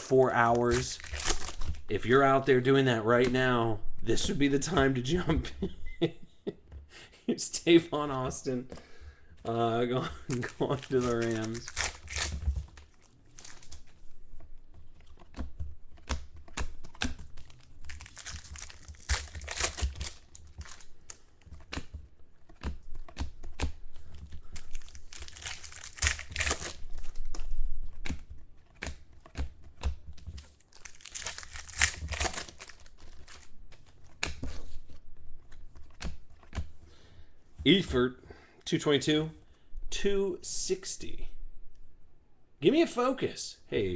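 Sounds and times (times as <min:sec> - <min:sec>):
foil wrappers tearing and crinkling: 0:00.4 - 0:01.9, 0:10.2 - 0:13.9, 0:17.4 - 0:21.2, 0:24.4 - 0:27.2, 0:30.6 - 0:33.5.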